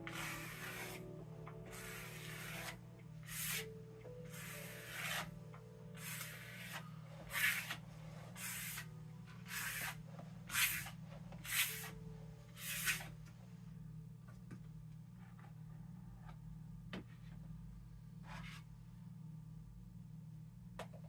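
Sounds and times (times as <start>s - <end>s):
rubbing strokes: 0.0s - 1.1s, 1.7s - 3.7s, 4.3s - 5.3s, 6.0s - 12.0s
steady low hum: 0.0s - 21.0s.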